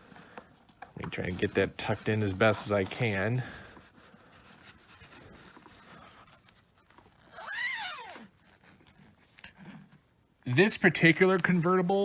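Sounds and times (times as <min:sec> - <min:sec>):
cloth bag rustling: 0:00.0 - 0:12.0
zipper pulled: 0:03.9 - 0:10.6.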